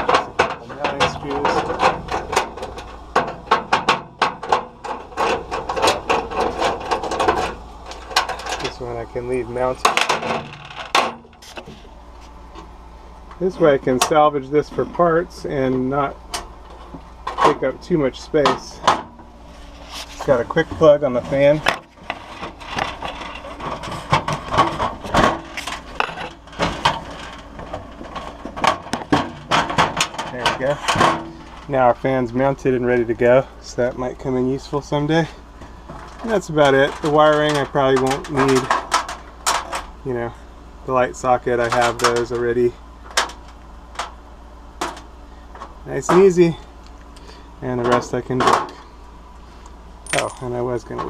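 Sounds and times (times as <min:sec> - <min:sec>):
fan motor parts clicking and rattling: 0:00.0 - 0:51.0.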